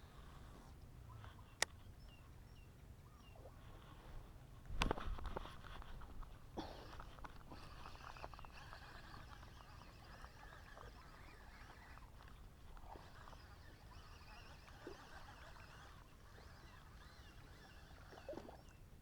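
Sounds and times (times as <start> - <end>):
soft clicks: 1.2 - 2.2.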